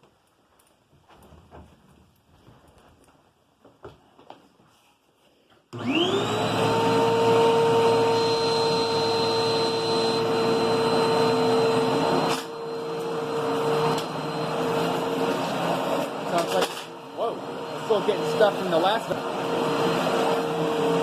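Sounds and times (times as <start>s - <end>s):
vacuum cleaner motor whine: 5.8s - 21.0s
vacuum picking up debris: 15.3s - 17.0s.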